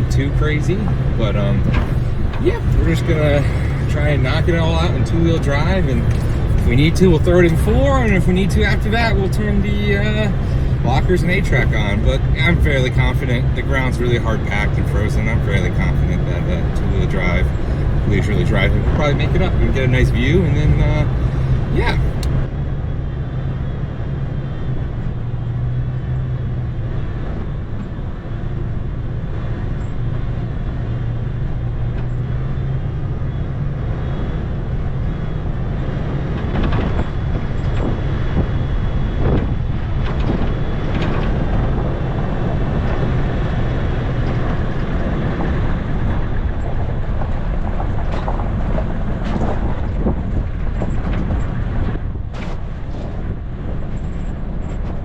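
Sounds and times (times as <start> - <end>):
truck engine running: 0.0 - 55.0
tyre and suspension noise: 0.0 - 55.0.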